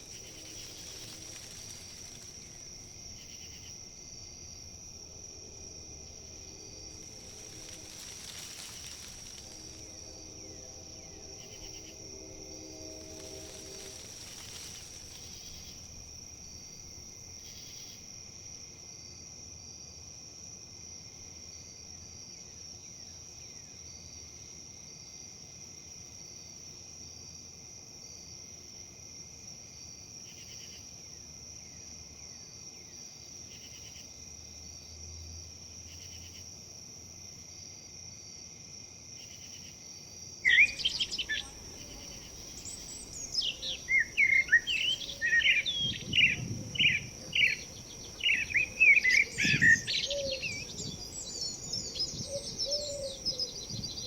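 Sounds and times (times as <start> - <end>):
insects trilling: 0.0 - 54.0
bird chirping: 40.4 - 54.0.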